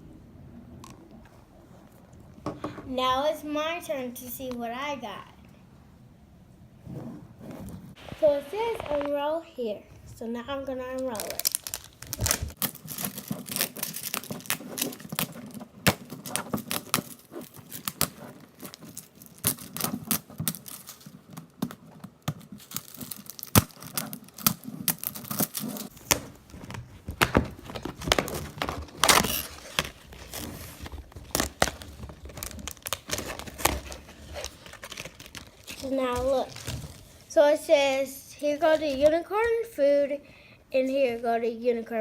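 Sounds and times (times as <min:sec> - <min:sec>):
packaging crinkling and tearing: 0:08.0 - 0:09.2, 0:11.0 - 0:37.3.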